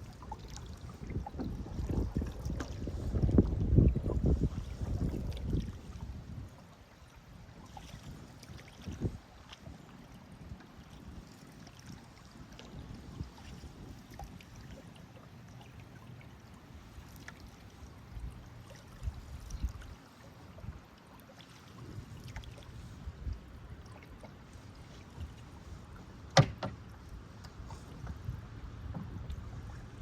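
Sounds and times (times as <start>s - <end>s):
paddle strokes: 0.0s - 30.0s
water trickling off paddle: 0.0s - 30.0s
low uneven rumble: 21.8s - 30.0s.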